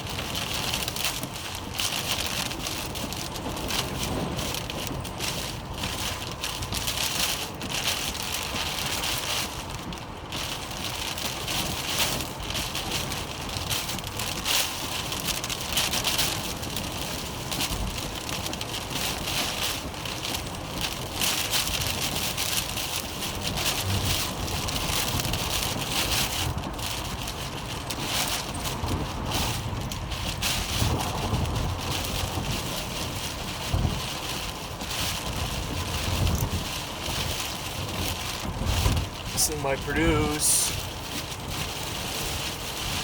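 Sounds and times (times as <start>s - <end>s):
heavy rain striking surfaces: 0.0s - 43.0s
low rumble: 23.6s - 25.3s.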